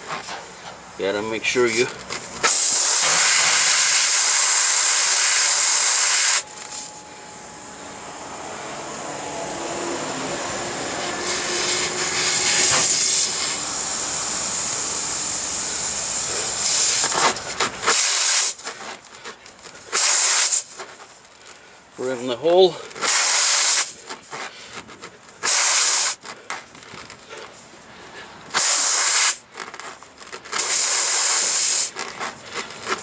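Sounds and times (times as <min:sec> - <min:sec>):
short loud air blasts: 0:00.0 - 0:18.7, 0:19.9 - 0:20.9, 0:22.9 - 0:24.0, 0:25.4 - 0:26.2, 0:28.5 - 0:29.5, 0:30.6 - 0:32.0
air hissing from tire: 0:00.0 - 0:19.1, 0:19.8 - 0:21.2, 0:22.9 - 0:24.8, 0:25.4 - 0:26.2, 0:28.3 - 0:29.5, 0:30.6 - 0:33.0.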